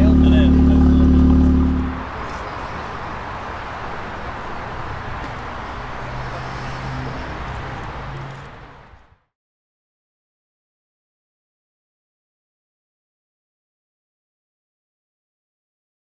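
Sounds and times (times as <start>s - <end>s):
car engine: 0.0s - 9.0s
street traffic noise: 0.0s - 9.3s.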